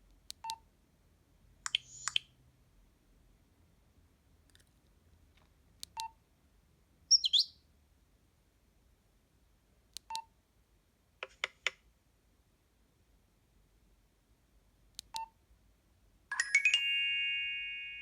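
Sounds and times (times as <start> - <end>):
bird-like phone chirp: 1.8 - 2.2, 7.1 - 7.5
keypad click with beep: 15.0 - 15.3.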